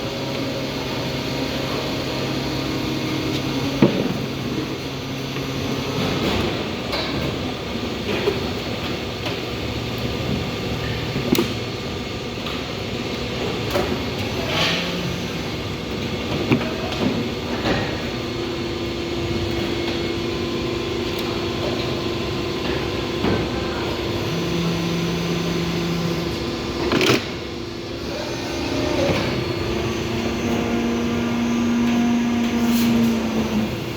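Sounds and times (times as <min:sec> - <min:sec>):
machine hum: 0:11.6 - 0:33.9
pitched machine whines: 0:18.5 - 0:33.9.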